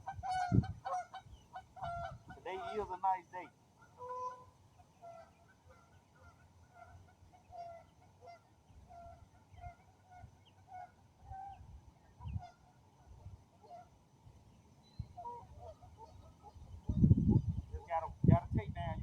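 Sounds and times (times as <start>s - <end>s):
geese honking: 0.0s - 11.6s, 12.2s - 14.0s, 15.2s - 16.7s
wind thumping on microphone: 0.1s - 0.9s, 16.8s - 19.0s.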